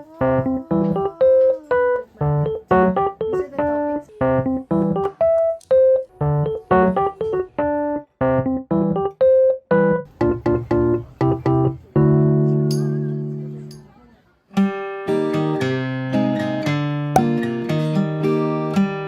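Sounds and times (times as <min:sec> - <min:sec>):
electric piano melody: 0:00.0 - 0:13.7.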